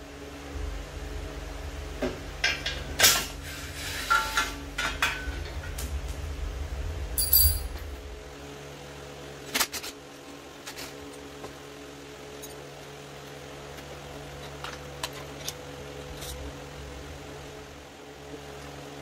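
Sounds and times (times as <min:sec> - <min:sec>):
low rumble: 0:04.6 - 0:08.9
metal tools clinking: 0:07.2 - 0:07.8.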